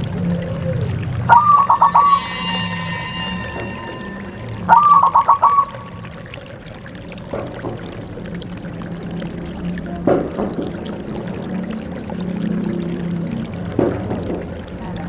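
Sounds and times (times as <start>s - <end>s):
dove cooing: 4.7s - 5.8s.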